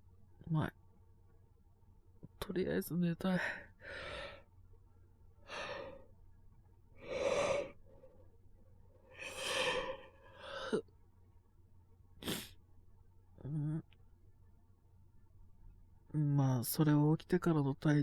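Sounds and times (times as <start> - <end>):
breaths: 3.4 - 4.5, 5.4 - 6.1, 7.0 - 8.3, 9.1 - 10.8.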